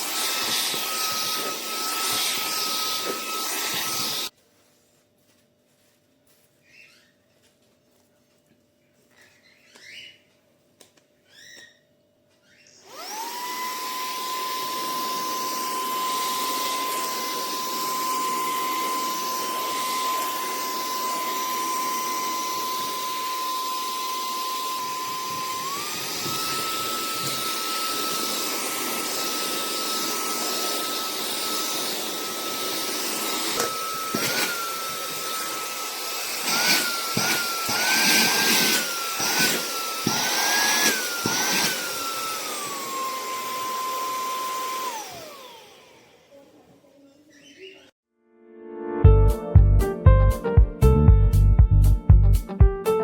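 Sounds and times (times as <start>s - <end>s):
handheld vacuum whining: 0.0s - 4.4s, 12.4s - 47.9s.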